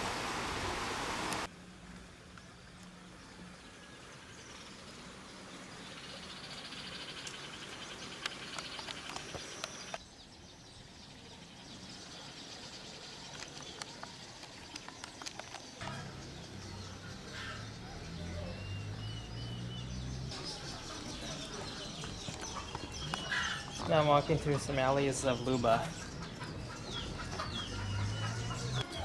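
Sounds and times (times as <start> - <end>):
birds chirping: 3.6 - 29.0
insects chirping: 4.0 - 29.0
scattered clicks: 8.1 - 10.0.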